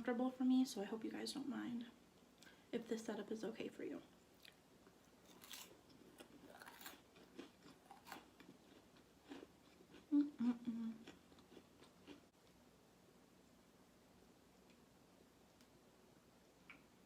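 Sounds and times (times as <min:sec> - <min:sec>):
person chewing: 0:04.4 - 0:12.3
person humming: 0:10.1 - 0:11.1.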